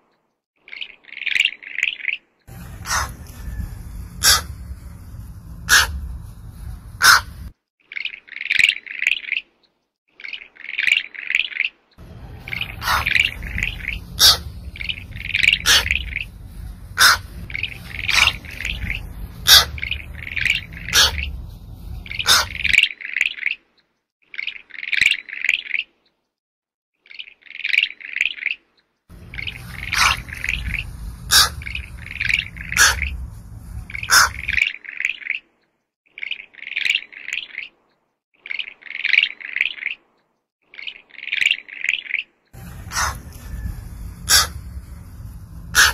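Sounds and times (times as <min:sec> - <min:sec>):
low rumble: 0:02.5 - 0:07.5, 0:12.0 - 0:22.8, 0:29.1 - 0:34.6, 0:42.6 - 0:45.9
high chirping calls: 0:12.0 - 0:22.8, 0:29.2 - 0:34.6, 0:44.2 - 0:45.9.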